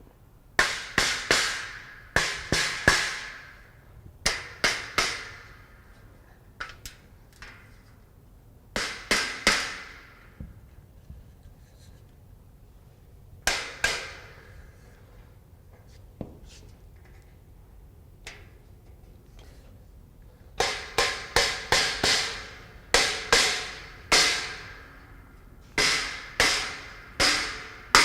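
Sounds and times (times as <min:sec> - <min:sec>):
rubber mallet striking steel: 0:20.6 - 0:25.0, 0:25.8 - 0:28.0.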